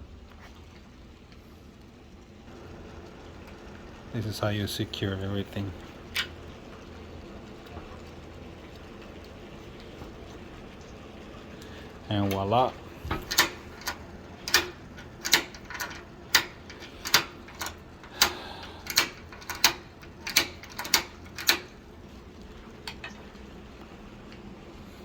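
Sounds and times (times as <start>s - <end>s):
metallic lock mechanism clicks: 13.1s - 21.8s.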